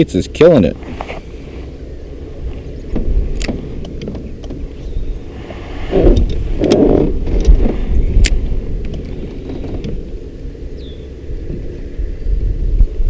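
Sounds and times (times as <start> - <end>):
wind buffeting microphone: 0.0 - 13.0
sharp clicks: 8.2 - 9.2.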